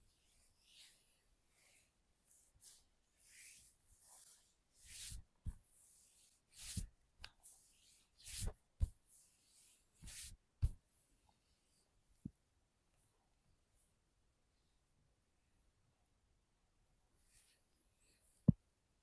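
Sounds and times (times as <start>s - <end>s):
hands rubbing over skin: 10.0s - 10.8s
soft thumps: 10.0s - 10.8s.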